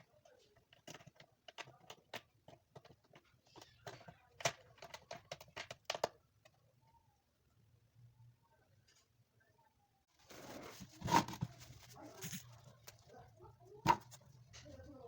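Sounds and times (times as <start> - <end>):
scraping rustle: 10.1 - 13.1.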